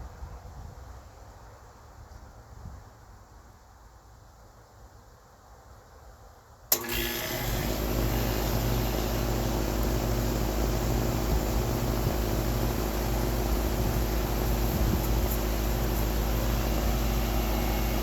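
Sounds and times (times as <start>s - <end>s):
air conditioner humming: 6.7s - 18.0s.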